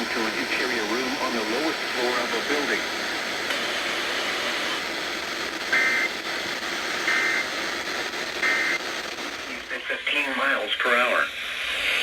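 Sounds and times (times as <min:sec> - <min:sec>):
radio static hiss: 0:00.0 - 0:12.0
warbling digital data bursts: 0:08.4 - 0:08.8.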